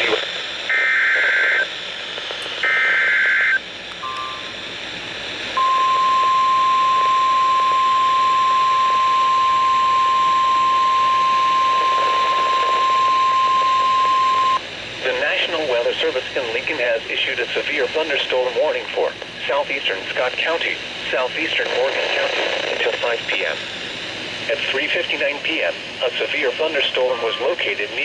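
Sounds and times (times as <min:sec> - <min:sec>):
radio hiss: 0:00.0 - 0:28.0
steady warning alarm tone: 0:02.7 - 0:14.6.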